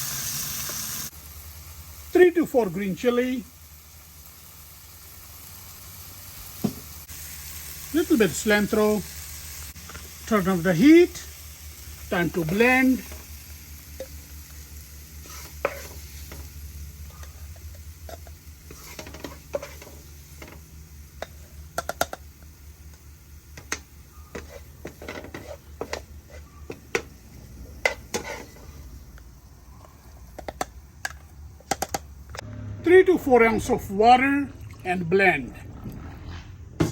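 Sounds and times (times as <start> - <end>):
metal spoon scraping a pot: 15.2 - 16.2, 17.1 - 20.0, 24.3 - 26.8, 27.8 - 28.8.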